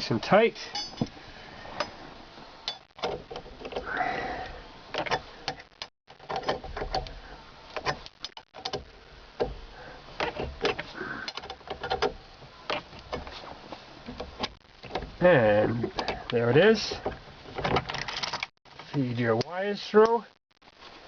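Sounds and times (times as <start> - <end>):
metallic clicks and knocks: 4.9 - 7.2, 7.8 - 9.6, 10.2 - 13.4.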